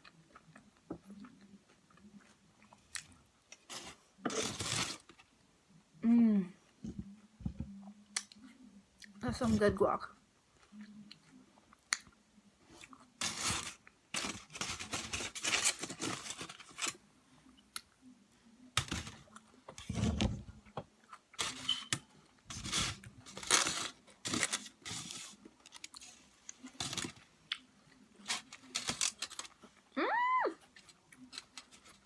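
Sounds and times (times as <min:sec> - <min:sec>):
crunching and chewing: 0:00.0 - 0:05.2, 0:22.5 - 0:29.9
food container rustling: 0:13.2 - 0:17.0, 0:21.4 - 0:27.2, 0:28.2 - 0:29.6.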